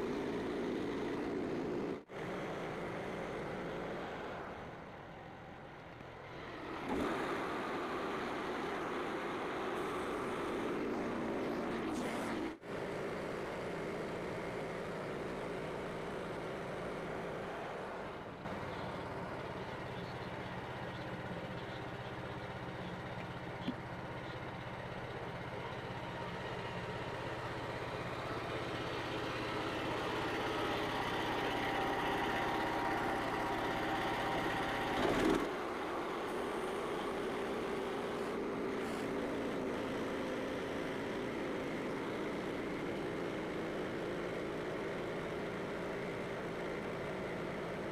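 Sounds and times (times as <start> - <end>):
bandsaw sawmill cutting log: 29.5 - 35.6.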